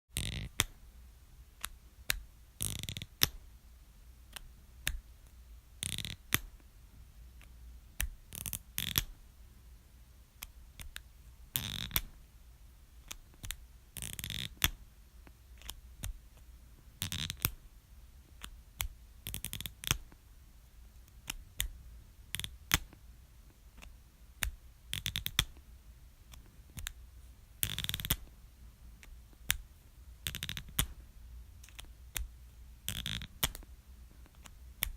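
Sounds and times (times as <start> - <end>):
marker caps clicking: 0.2 - 0.7, 1.6 - 3.4, 5.8 - 6.5, 7.4 - 9.1, 11.6 - 12.1, 13.0 - 14.8, 15.6 - 16.2, 17.0 - 17.6, 18.4 - 20.1, 22.3 - 22.9, 23.8 - 25.6, 26.3 - 27.0, 27.6 - 28.3, 30.2 - 30.9, 31.6 - 33.6.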